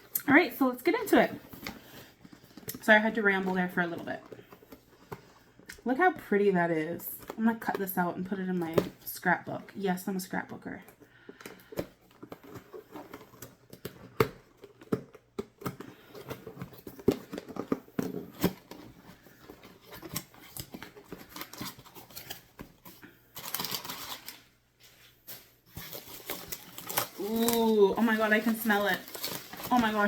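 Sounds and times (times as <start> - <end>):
packaging rustling: 0.9 - 5.8, 11.1 - 30.0.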